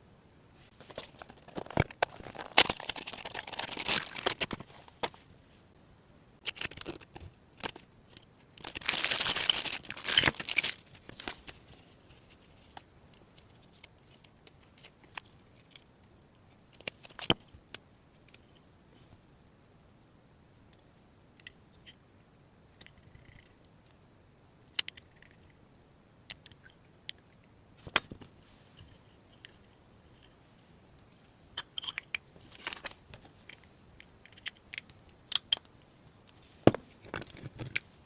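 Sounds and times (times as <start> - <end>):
plastic packaging crinkling and tearing: 0.8 - 5.1, 6.4 - 7.8, 8.5 - 11.6, 32.5 - 33.0.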